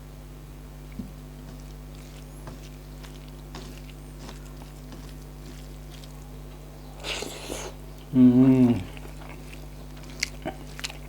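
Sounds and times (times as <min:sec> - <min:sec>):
steady low hum: 0:00.0 - 0:11.0
person chewing wetly: 0:00.9 - 0:11.0.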